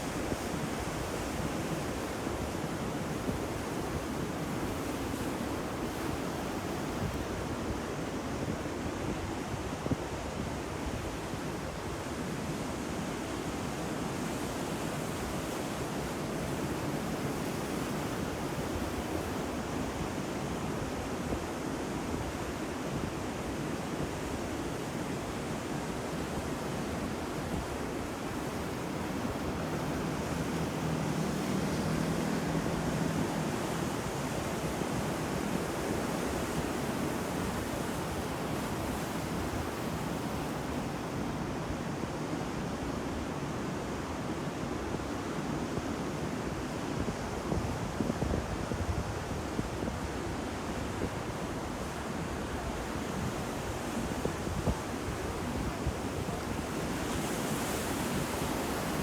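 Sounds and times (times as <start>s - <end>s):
ocean waves breaking: 26.7s - 42.1s, 52.0s - 59.0s.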